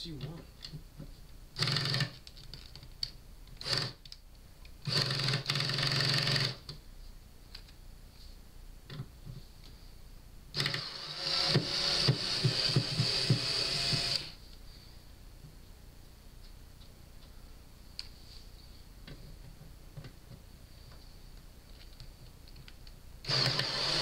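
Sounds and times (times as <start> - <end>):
power screwdriver running: 10.6 - 14.4, 23.3 - 24.0.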